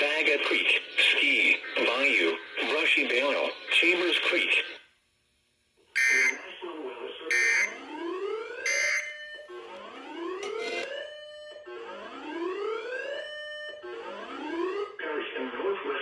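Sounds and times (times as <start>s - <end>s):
rising whooping alarm tone: 6.0s - 6.4s, 7.3s - 11.0s
short alarm beeps: 6.0s - 6.5s, 7.3s - 8.0s, 8.7s - 9.4s.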